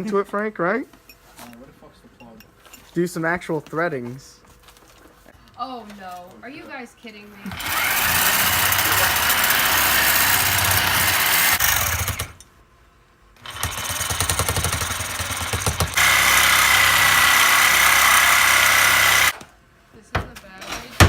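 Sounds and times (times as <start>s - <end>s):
electric power tool whining: 7.5s - 12.4s, 13.4s - 19.4s.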